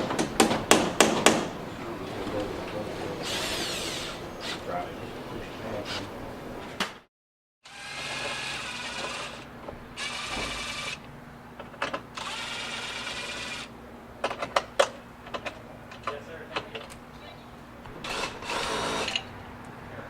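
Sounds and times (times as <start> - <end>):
power drill running: 3.0 - 4.7, 7.6 - 11.1, 11.9 - 13.7, 17.9 - 19.4.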